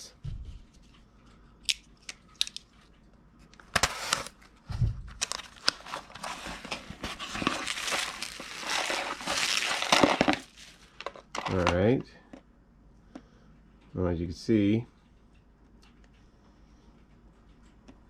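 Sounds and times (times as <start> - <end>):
packaging crinkling and rustling: 3.6 - 11.8.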